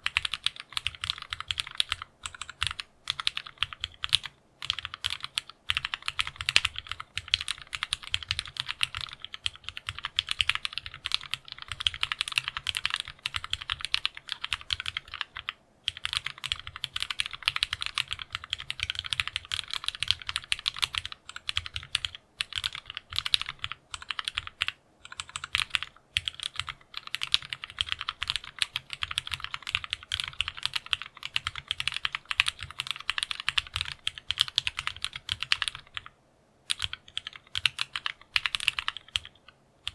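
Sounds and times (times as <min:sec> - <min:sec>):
mechanical keyboard typing: 0:00.0 - 0:36.1, 0:36.7 - 0:39.9.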